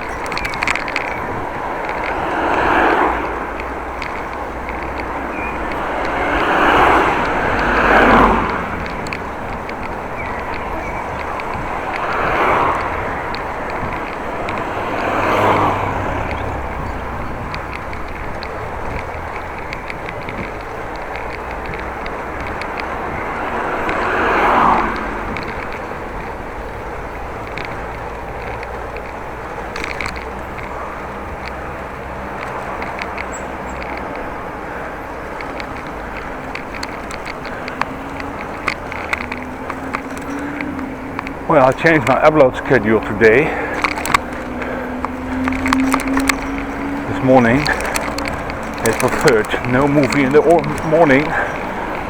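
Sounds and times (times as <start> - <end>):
light clicks: 0.0 - 52.0
tyre rumble on road: 0.0 - 52.0
wind: 0.0 - 52.0.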